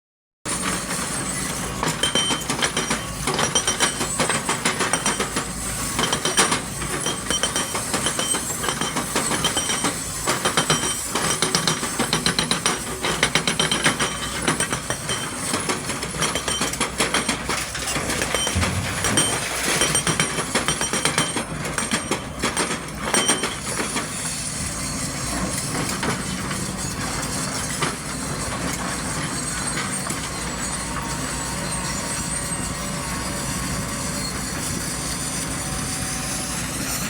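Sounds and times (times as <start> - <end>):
excavator engine humming: 17.3 - 23.8.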